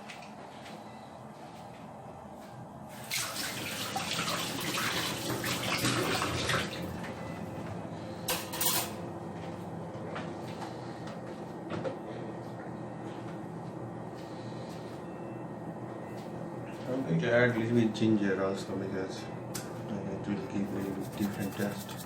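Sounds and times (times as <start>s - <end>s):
water running and splashing: 3.1s - 6.6s.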